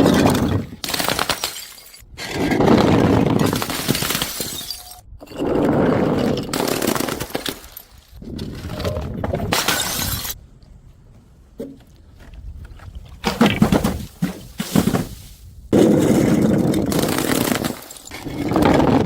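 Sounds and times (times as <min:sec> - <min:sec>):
glass bottles smashing: 0:00.0 - 0:02.0, 0:03.4 - 0:05.0, 0:09.6 - 0:10.4.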